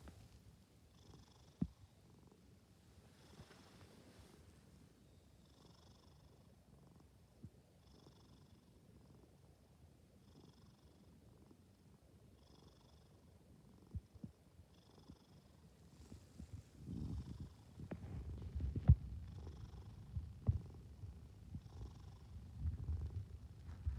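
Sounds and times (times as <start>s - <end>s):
cat snoring softly: 0.9s - 2.4s, 3.1s - 4.4s, 5.3s - 9.5s, 10.2s - 23.9s
low rumble: 16.8s - 23.9s.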